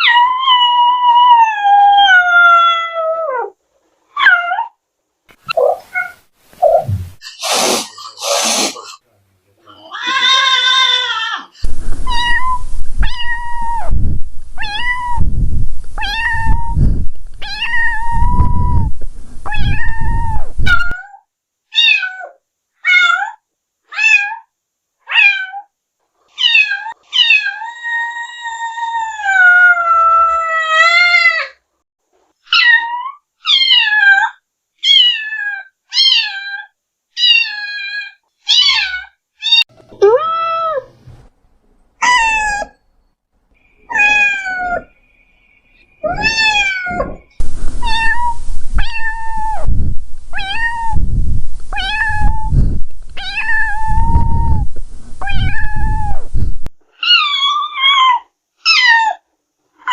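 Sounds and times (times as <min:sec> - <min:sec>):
low rumbling noise: 0:06.6 - 0:07.4, 0:11.6 - 0:20.7, 0:47.1 - 0:56.7
cats meowing: 0:09.7 - 0:14.0, 0:14.6 - 0:15.2, 0:16.0 - 0:16.8, 0:17.4 - 0:18.9, 0:19.5 - 0:21.2, 0:26.3 - 0:31.6, 0:42.0 - 0:42.8, 0:43.8 - 0:45.0, 0:46.0 - 0:49.7, 0:50.3 - 0:51.0, 0:51.7 - 0:52.5, 0:53.2 - 0:56.3, 0:57.0 - 0:59.2.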